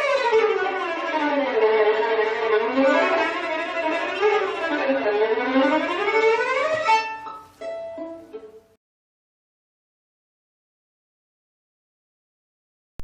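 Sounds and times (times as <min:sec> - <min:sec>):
bowed string instrument sliding notes: 0:00.0 - 0:08.8.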